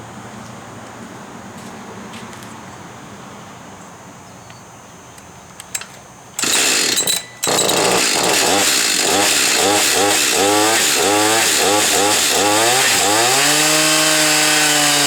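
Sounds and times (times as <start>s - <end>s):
chainsaw revving: 6.4s - 15.0s.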